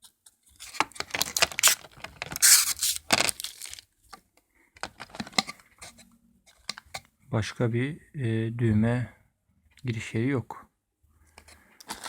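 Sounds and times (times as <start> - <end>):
packaging rustling and crinkling: 0.6 - 3.9, 4.8 - 5.6.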